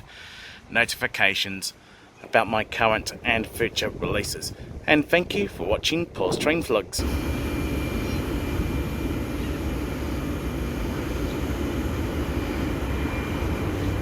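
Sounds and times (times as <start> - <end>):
electric train rumbling: 7.0 - 14.0.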